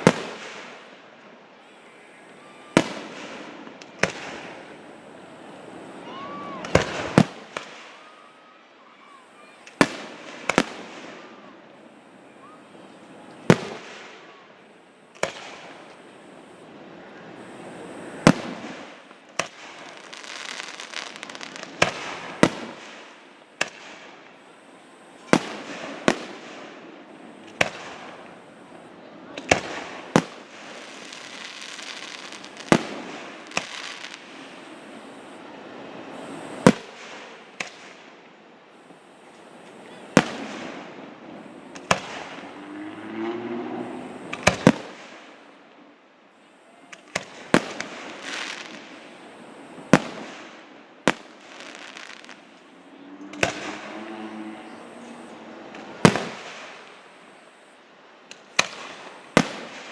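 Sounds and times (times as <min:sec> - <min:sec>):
fireworks crackling and hissing: 0:00.0 - 0:59.9
firework shells bursting: 0:17.4 - 0:35.4, 0:39.6 - 0:43.4, 0:44.0 - 0:45.5.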